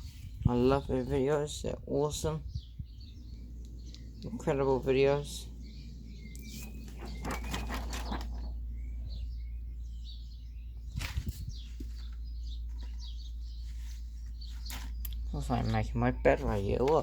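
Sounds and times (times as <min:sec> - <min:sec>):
birds chirping: 0:00.0 - 0:17.0
steady low hum: 0:02.2 - 0:10.9.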